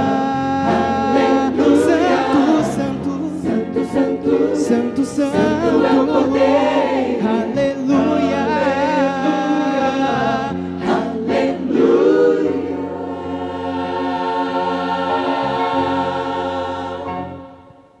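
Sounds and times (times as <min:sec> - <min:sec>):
choir singing a hymn: 0:00.0 - 0:18.0.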